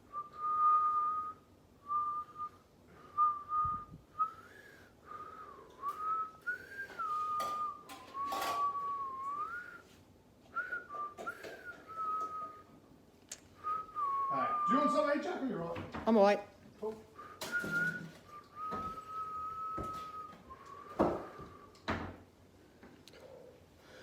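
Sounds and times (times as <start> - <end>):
person whistling: 0.1 - 12.7, 13.6 - 15.0, 17.2 - 21.7.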